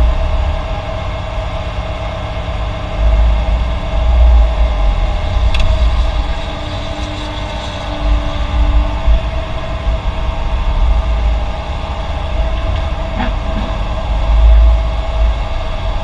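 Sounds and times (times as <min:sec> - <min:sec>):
diesel machinery rumbling: 0:00.0 - 0:16.0
sharp click: 0:05.5 - 0:05.8.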